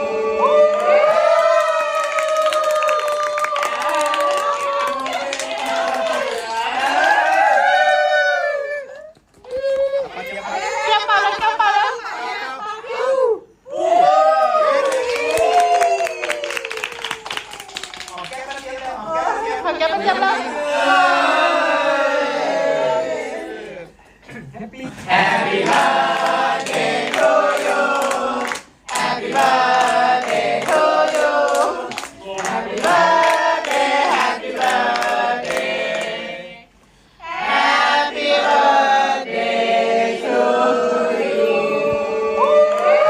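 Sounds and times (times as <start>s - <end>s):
group singing together: 0.0s - 1.6s, 19.7s - 24.0s, 24.9s - 43.0s.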